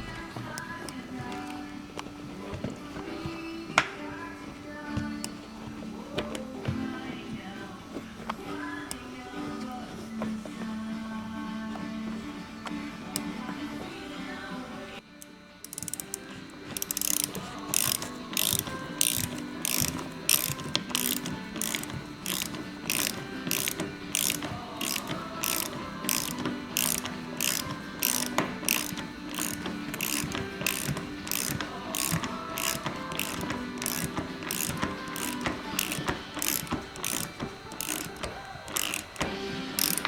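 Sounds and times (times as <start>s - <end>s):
ratchet wrench clicking: 4.9s - 6.8s, 15.6s - 40.0s.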